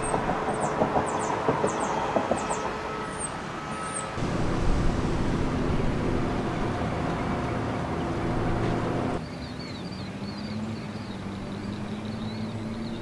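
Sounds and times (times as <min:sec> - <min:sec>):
loud mechanical hum: 0:00.0 - 0:09.2
small birds chirping: 0:07.4 - 0:13.0.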